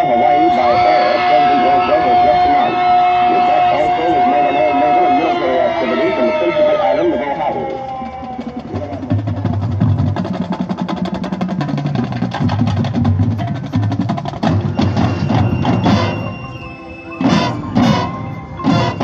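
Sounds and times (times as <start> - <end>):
rapid drum strokes: 8.2 - 16.4
accented chords: 13.1 - 19.0.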